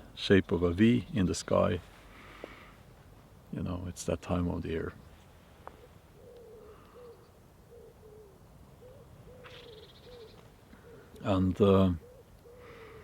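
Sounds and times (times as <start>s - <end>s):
faint low bird calls: 0.0s - 13.0s
higher buzzy bird call: 5.7s - 11.1s.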